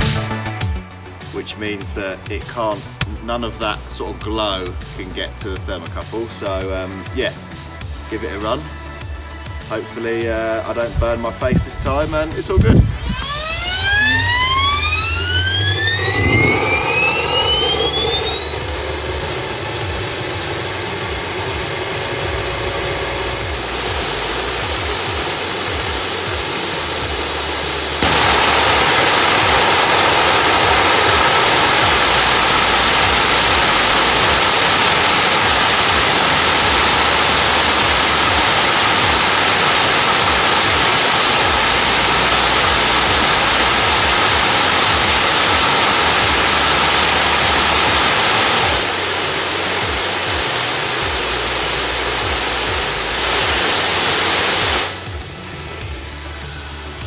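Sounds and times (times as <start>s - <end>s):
afterburner rushing roar: 12.6s - 56.6s
jet engine whine: 12.6s - 57.0s.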